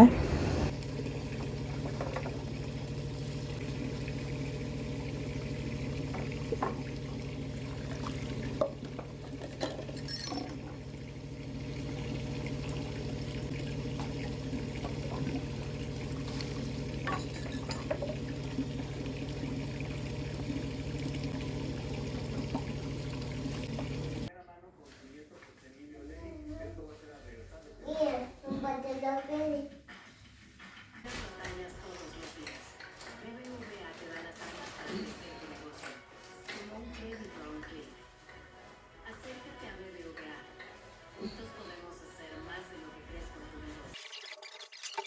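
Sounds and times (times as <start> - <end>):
water running: 0.0 - 24.3, 31.6 - 45.0
dishes clinking: 8.6 - 10.8, 17.1 - 18.2.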